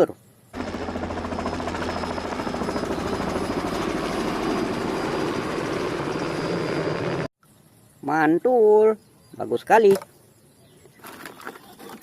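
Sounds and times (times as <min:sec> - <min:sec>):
helicopter rotor beating: 0:00.6 - 0:07.3.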